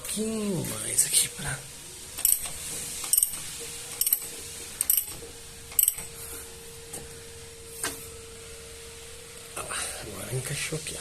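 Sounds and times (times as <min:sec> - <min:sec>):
faint steady hum: 0:00.0 - 0:11.0
steel parts clinking: 0:02.2 - 0:06.2.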